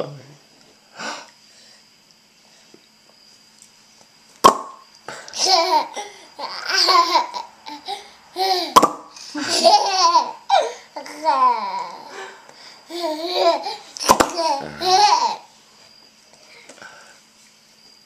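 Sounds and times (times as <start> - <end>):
sharp pop: 4.4 - 4.8, 8.8 - 9.1, 14.0 - 14.4
baby laughing: 5.4 - 8.8, 9.4 - 11.8, 12.9 - 15.4.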